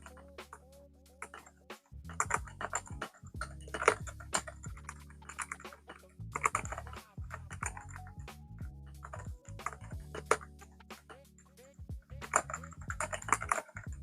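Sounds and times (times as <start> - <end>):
background music: 0.0 - 14.0
mechanical keyboard typing: 2.2 - 8.3, 9.0 - 11.0, 12.3 - 14.0.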